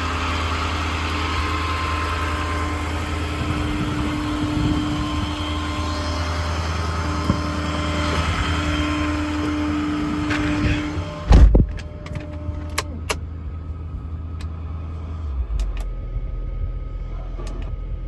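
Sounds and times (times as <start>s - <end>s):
low motor rumble: 0.0s - 18.0s
motor drone: 0.0s - 18.0s
heavy thump: 10.2s - 12.3s.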